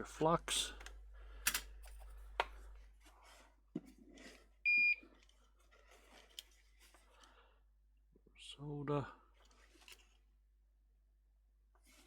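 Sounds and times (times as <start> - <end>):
faint handling noise: 0.7 - 7.4.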